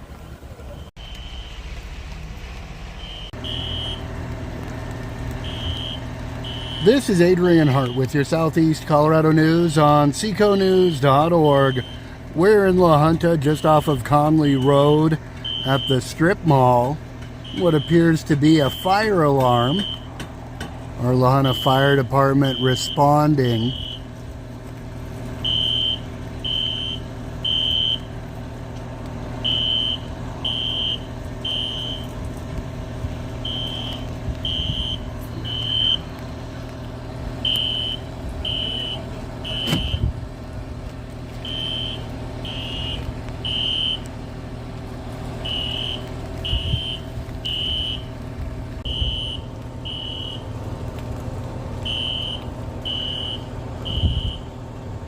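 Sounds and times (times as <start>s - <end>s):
fire alarm beeps: 3.0s - 4.0s, 5.4s - 7.0s, 11.6s - 12.0s, 15.4s - 16.0s, 17.4s - 19.0s, 19.6s - 20.1s, 21.4s - 24.0s, 25.4s - 28.1s, 29.4s - 32.1s, 33.4s - 36.0s, 37.4s - 40.0s, 41.4s - 44.0s, 45.4s - 48.1s, 48.9s - 50.4s, 51.9s - 54.5s.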